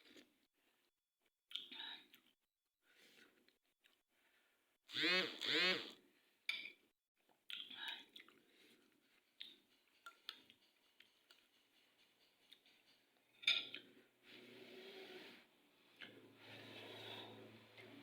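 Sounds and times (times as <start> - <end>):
chewing and mouth sounds: 7.2 - 11.5.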